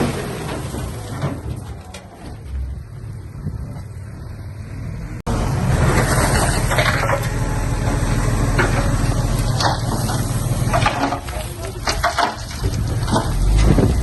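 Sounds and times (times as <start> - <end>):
heavy diesel machinery rumbling: 0.0 - 14.0
scraping and clanking: 5.8 - 14.0.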